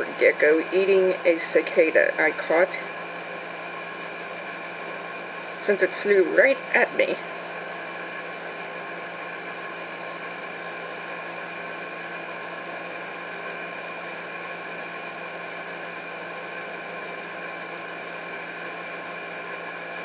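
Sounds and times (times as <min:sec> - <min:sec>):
steady machine hum: 0:00.0 - 0:20.0.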